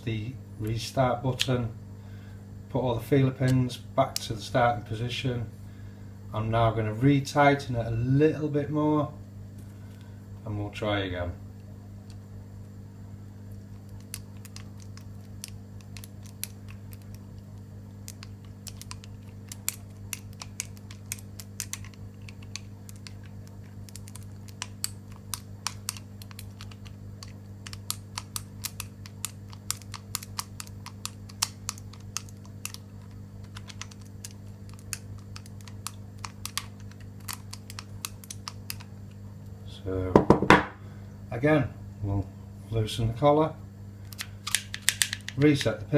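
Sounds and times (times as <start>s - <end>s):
steady low hum: 0.0s - 45.9s
lockpick clicking in lock: 44.1s - 45.4s.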